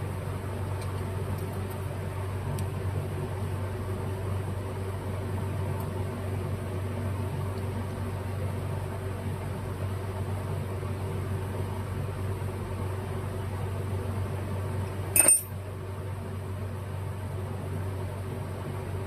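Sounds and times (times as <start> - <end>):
low machine hum: 0.0 - 19.0
short sharp clink: 15.2 - 15.6.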